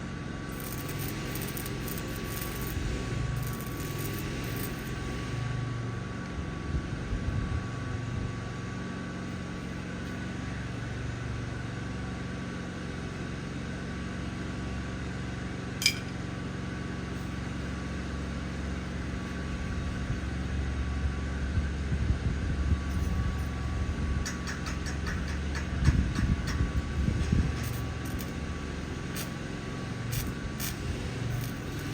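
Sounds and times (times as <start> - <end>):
steady mechanical hum: 0.0 - 31.9
sharp click: 15.8 - 16.2
quick ticks: 24.2 - 28.3.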